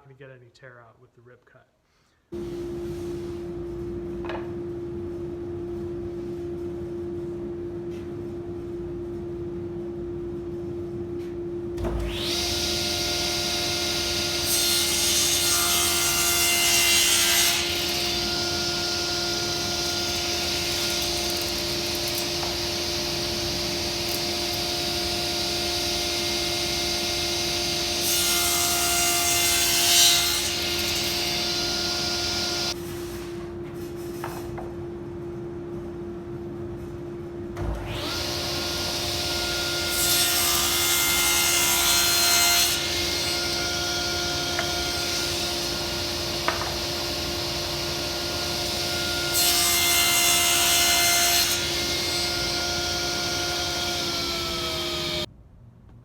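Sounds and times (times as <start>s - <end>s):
table saw whining: 11.9s - 32.8s, 37.7s - 55.3s
saw blade cutting wood: 12.0s - 32.8s, 37.8s - 55.3s.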